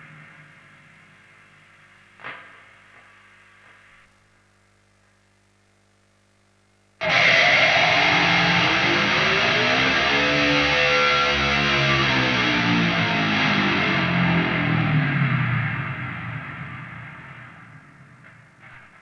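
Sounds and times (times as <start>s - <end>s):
faint mains hum: 0.0s - 19.0s
distorted electric guitar bend: 7.0s - 19.0s.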